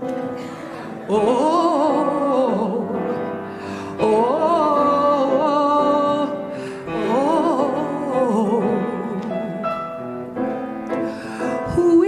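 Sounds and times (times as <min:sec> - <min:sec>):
piano accompaniment: 0:00.0 - 0:12.0
woman singing with vibrato: 0:01.0 - 0:09.8, 0:11.4 - 0:12.0.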